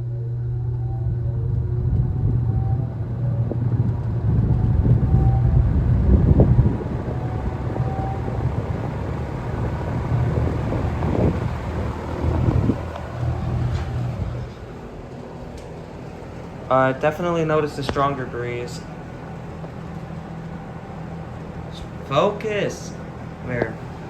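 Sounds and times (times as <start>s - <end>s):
box fan motor hum and rushing air: 0.0s - 24.0s.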